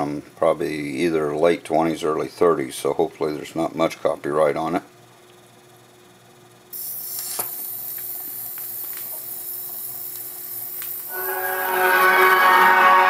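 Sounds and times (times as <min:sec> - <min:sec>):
faint steady hum: 0:00.0 - 0:13.0
record surface hiss: 0:00.0 - 0:13.0
music from a record: 0:11.1 - 0:13.0.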